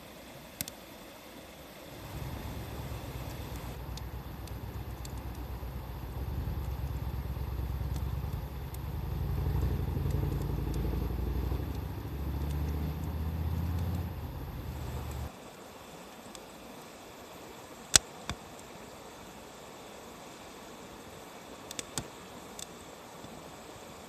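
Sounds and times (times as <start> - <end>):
campfire crackling: 1.7 - 15.3, 21.6 - 23.4
low engine-like rumble: 1.9 - 15.3.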